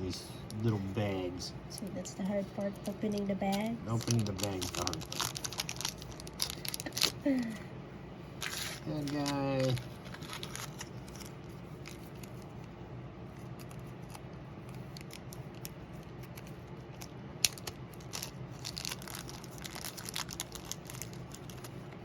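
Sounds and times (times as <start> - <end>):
plastic bag crinkling: 2.6 - 7.5, 8.4 - 12.5, 14.8 - 21.8.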